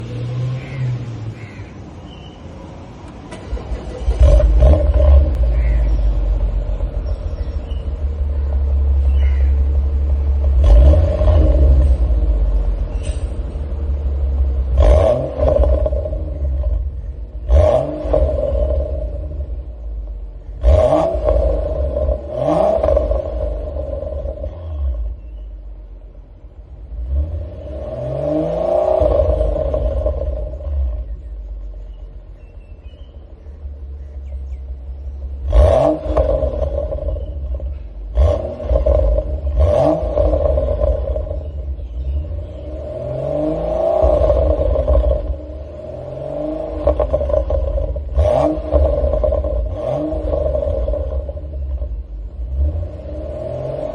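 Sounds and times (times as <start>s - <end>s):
car engine revving: 0.0s - 1.6s, 3.0s - 53.9s
exhaust pops and crackles: 35.9s - 42.1s, 46.7s - 52.4s.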